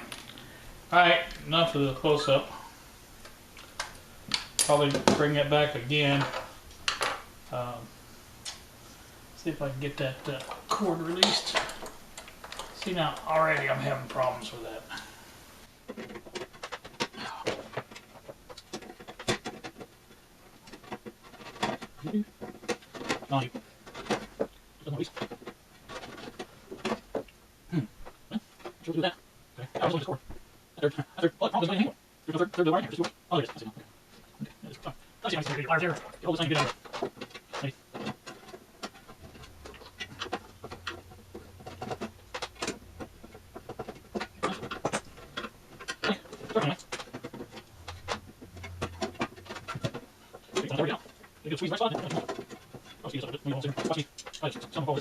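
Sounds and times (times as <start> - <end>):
hands and tool clicking and scraping: 0.0 - 7.8, 8.4 - 55.0
faint low hum: 0.0 - 55.0.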